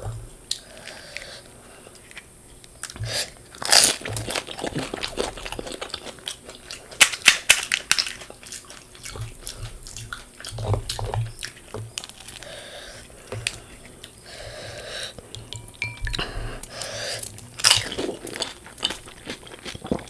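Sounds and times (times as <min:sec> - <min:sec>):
crisp shells cracking: 0:03.5 - 0:09.0
spoon clinking on plate: 0:15.6 - 0:16.3.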